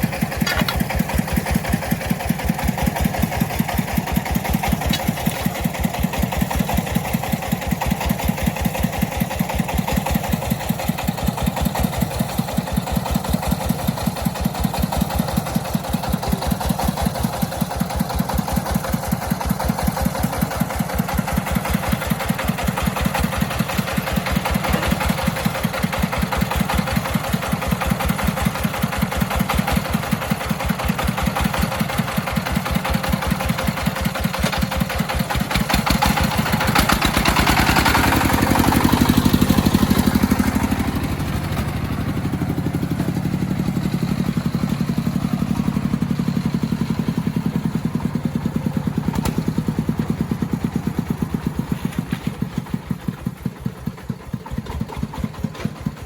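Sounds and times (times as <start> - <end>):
vehicle engine pulsing: 32.6 - 56.0.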